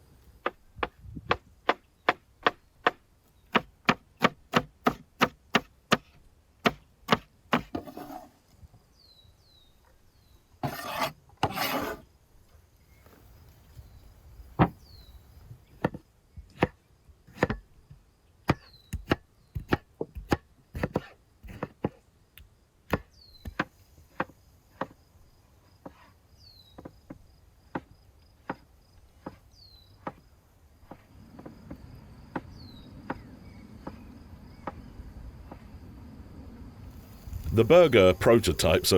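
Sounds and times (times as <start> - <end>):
knife chopping on wooden board: 2.4 - 8.2, 16.6 - 17.6, 18.5 - 22.0, 29.2 - 29.4
short scraping: 7.8 - 8.4, 10.6 - 12.0.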